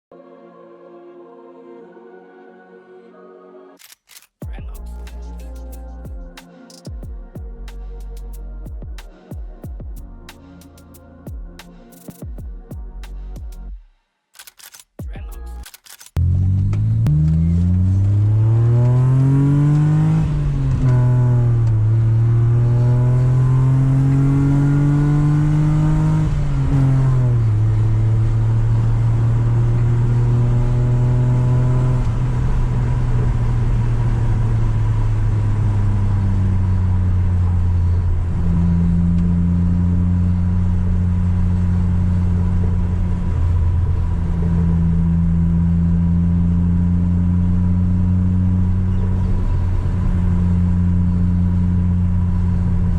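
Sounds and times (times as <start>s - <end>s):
car engine accelerating through gears: 16.2s - 52.9s.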